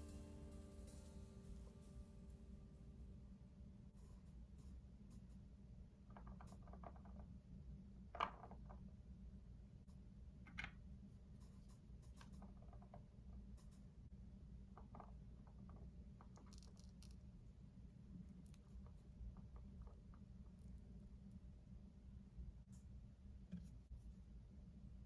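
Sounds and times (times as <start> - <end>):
low hum: 0.0 - 4.7.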